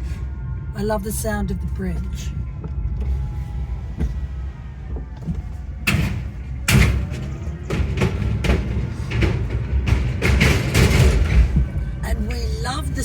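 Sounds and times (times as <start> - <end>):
low rumble: 0.0 - 13.0
tyres thumping over bridge: 3.1 - 13.0.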